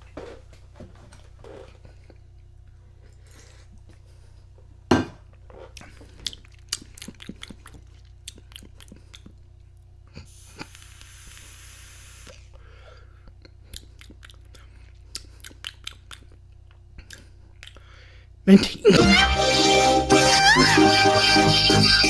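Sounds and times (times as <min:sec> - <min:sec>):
hiss of air drawn through vape: 0:10.3 - 0:12.5.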